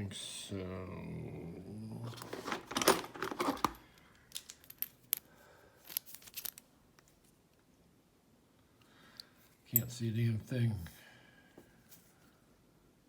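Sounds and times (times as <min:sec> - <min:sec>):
metal parts scraping and rattling: 0:02.0 - 0:05.2, 0:05.8 - 0:06.6.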